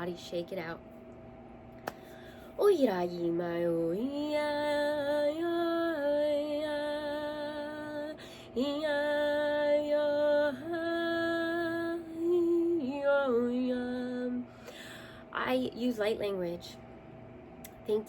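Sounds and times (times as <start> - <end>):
woman singing wordless held notes: 2.6 - 14.5.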